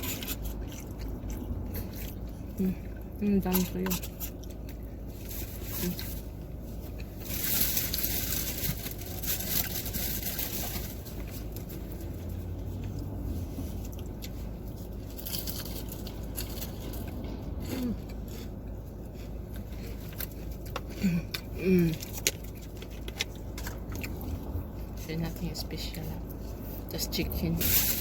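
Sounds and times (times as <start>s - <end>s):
eating crunches: 0.0s - 11.7s, 13.8s - 24.7s
wrappers rustling: 5.1s - 12.9s, 27.4s - 28.0s.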